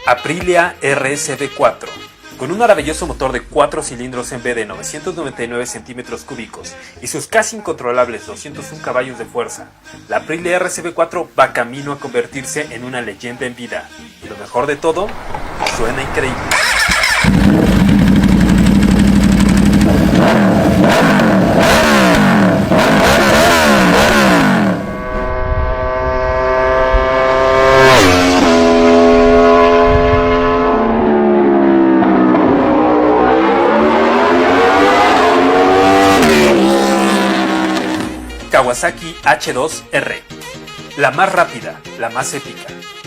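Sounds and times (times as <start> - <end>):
motorcycle engine revving: 15.0 - 39.2.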